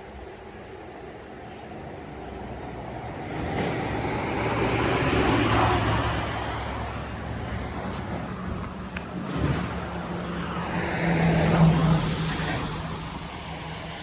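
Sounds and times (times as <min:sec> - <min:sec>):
car passing on wet road: 0:02.8 - 0:14.0.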